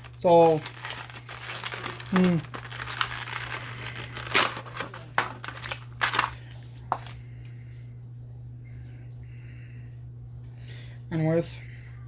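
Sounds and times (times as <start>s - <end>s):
packaging crinkling: 0.0s - 7.2s
steady low hum: 0.0s - 12.0s.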